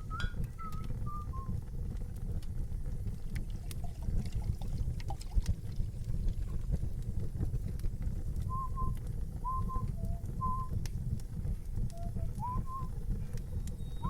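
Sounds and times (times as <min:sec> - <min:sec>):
person whistling a tune: 0:00.0 - 0:01.6, 0:08.5 - 0:10.7, 0:11.9 - 0:12.9.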